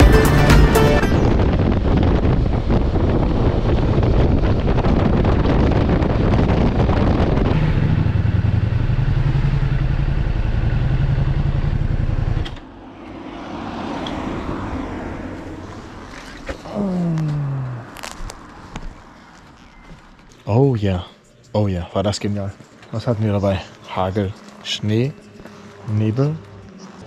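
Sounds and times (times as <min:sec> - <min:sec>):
rushing wind noise: 0:00.6 - 0:09.1, 0:11.8 - 0:16.7
motorcycle engine running: 0:01.0 - 0:12.5.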